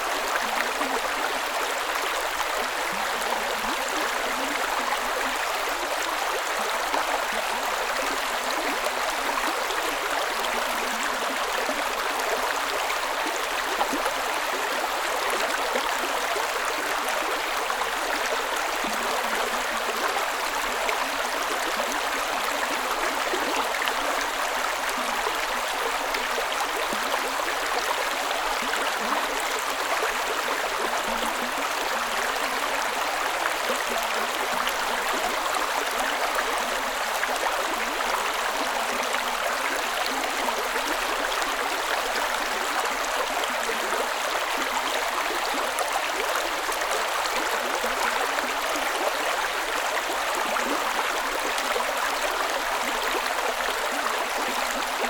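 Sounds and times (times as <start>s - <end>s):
water running in a stream: 0.0s - 55.0s.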